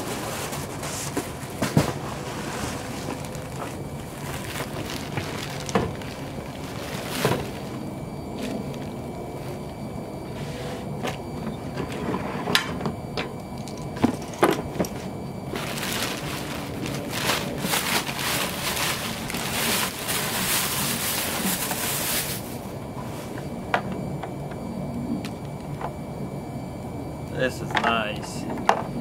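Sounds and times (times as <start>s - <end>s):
packaging crackling: 1.3s - 9.8s, 15.5s - 22.6s.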